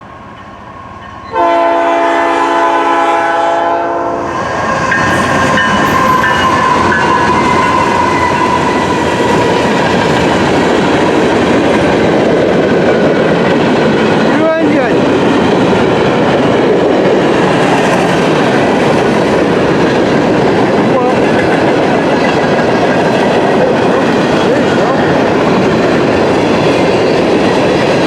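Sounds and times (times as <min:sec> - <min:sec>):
freight train rumbling past: 0:00.0 - 0:28.0
locomotive air horn blast: 0:01.3 - 0:04.3
steady high-pitched tone: 0:04.9 - 0:09.6.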